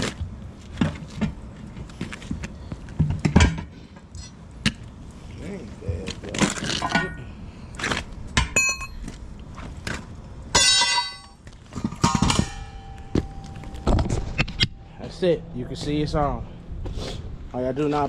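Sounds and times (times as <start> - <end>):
sharp ringing metallic strikes: 10.6 - 11.4, 12.0 - 13.6
metal bar clanking on rim: 10.6 - 13.0.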